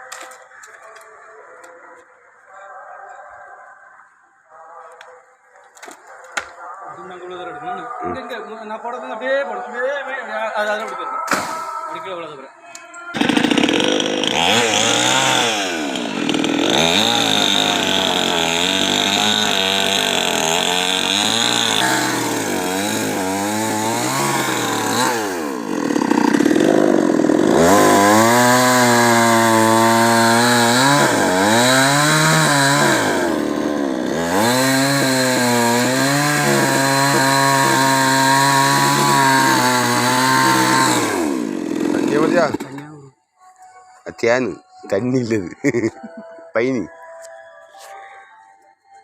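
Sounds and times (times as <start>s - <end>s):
chainsaw cutting wood: 0.0s - 1.1s, 11.3s - 11.8s, 13.1s - 42.9s.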